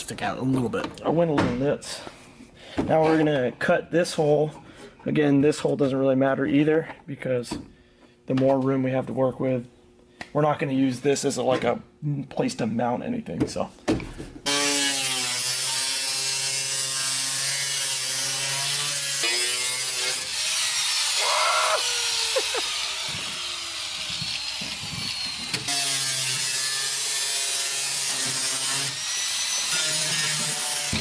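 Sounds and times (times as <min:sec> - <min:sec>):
power tool whining and grinding: 0:14.4 - 0:31.0.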